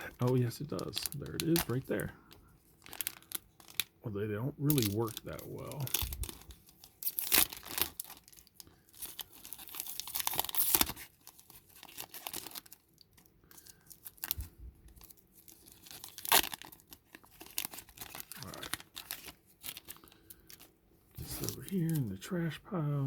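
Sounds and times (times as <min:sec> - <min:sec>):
foil wrapper tearing and crinkling: 0:00.0 - 0:02.1, 0:02.7 - 0:03.9, 0:04.6 - 0:22.1
sharp crackle: 0:00.0 - 0:02.1, 0:04.6 - 0:22.1
cards rustling: 0:00.0 - 0:03.9, 0:04.6 - 0:12.8, 0:13.5 - 0:22.2.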